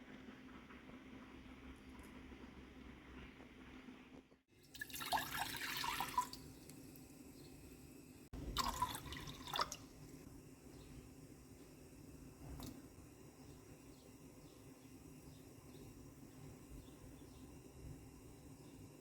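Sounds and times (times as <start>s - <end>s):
water pouring and splashing: 4.5s - 7.0s, 8.4s - 10.1s.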